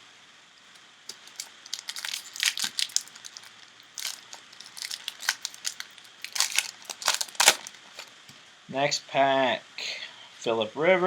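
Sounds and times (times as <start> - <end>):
foil wrapper crinkling and tearing: 1.1 - 8.2.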